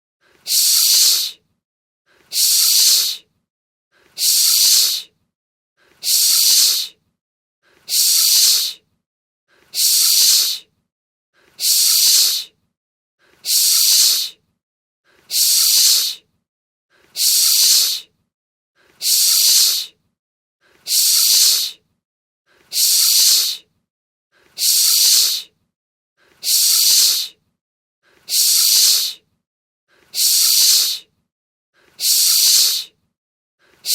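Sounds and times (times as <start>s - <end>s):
hiss burst: 0.5s - 1.2s, 17.2s - 18.0s, 19.1s - 19.9s, 24.6s - 25.4s, 26.5s - 27.3s, 28.4s - 29.2s, 30.2s - 31.0s, 32.0s - 32.9s.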